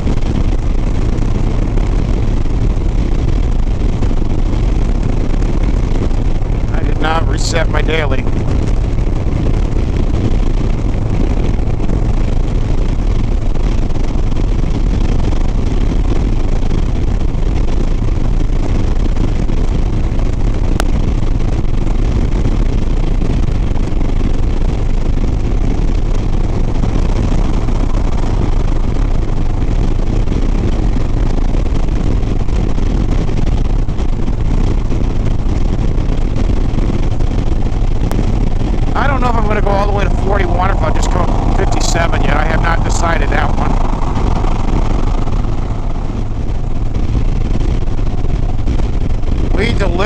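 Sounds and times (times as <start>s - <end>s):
wind rushing over microphone: 0.0s - 50.0s
motorcycle engine cruising: 37.2s - 50.0s.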